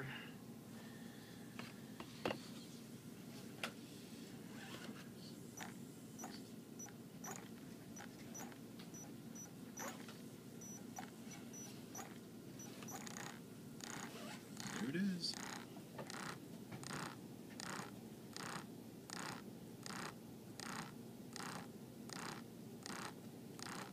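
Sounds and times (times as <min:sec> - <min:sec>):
electric motor humming: 0:05.6 - 0:08.6, 0:12.7 - 0:23.9.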